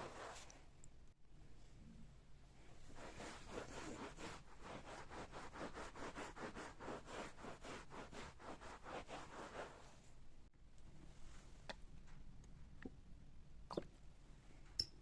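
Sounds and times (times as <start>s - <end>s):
rapid scrubbing strokes: 0.0s - 0.5s, 2.8s - 10.1s.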